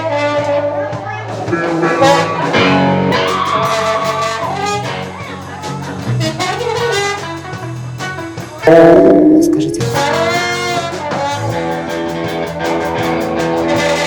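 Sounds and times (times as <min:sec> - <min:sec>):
guitar: 0:00.0 - 0:14.0
bass notes: 0:08.6 - 0:10.4.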